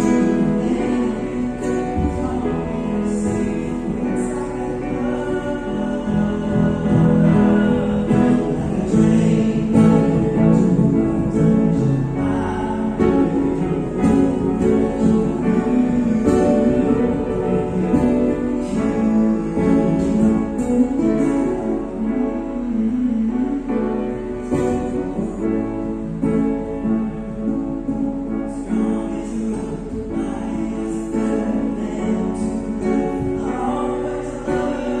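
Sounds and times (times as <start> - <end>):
song with singing and guitar: 0.0 - 35.0.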